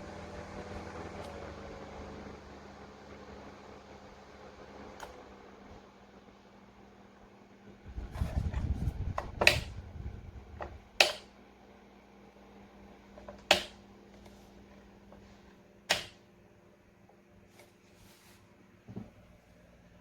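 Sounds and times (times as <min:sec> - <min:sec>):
low rumbling buffeting: 0:07.8 - 0:11.0.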